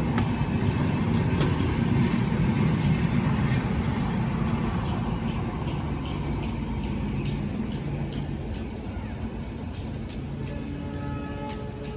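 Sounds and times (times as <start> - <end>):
vehicle rumble from inside: 0.0 - 10.5
faint low engine hum: 0.0 - 11.9
light ticks: 4.4 - 8.9.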